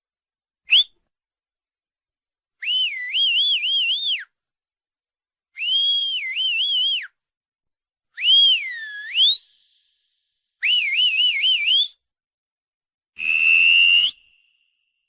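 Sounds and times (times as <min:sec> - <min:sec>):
person whistling: 0:00.7 - 0:01.0, 0:02.6 - 0:04.4, 0:05.6 - 0:07.2, 0:08.2 - 0:09.9, 0:10.6 - 0:12.1, 0:13.2 - 0:15.0.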